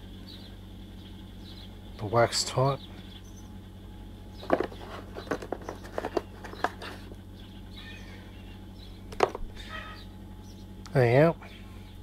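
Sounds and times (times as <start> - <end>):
low electrical hum: 0.0 - 12.0
capacitors clicking and rattling: 4.3 - 7.3.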